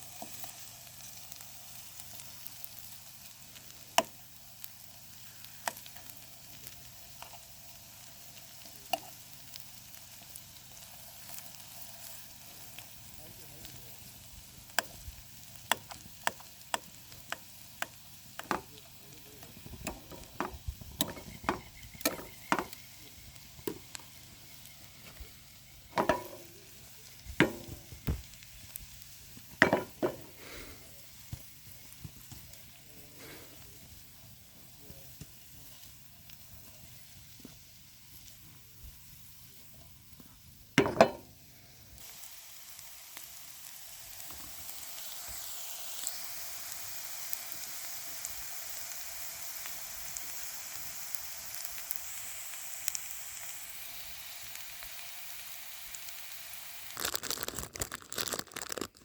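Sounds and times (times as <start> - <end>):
faint sizzle in a pan: 0.0 - 59.0
utensil scraping and knocking pan: 18.4 - 18.7, 19.7 - 22.8, 25.9 - 26.6, 27.4 - 28.3, 29.6 - 30.4, 40.8 - 41.3.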